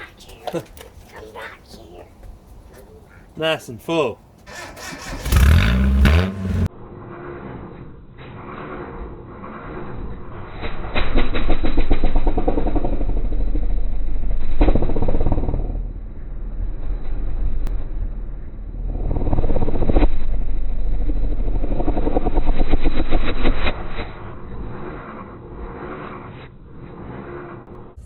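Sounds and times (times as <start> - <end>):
truck engine revving: 4.5 - 6.7, 12.6 - 28.0.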